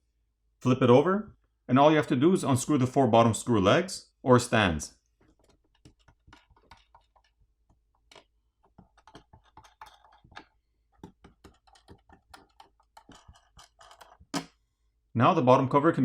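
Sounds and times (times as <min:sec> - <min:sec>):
small clicks of screws unscrewing: 0:05.2 - 0:14.5.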